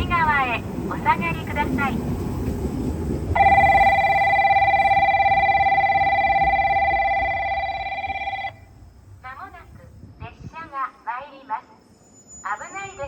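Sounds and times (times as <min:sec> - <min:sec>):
low background rumble: 0:00.0 - 0:10.4
electronic warning bell ringing: 0:03.4 - 0:08.6.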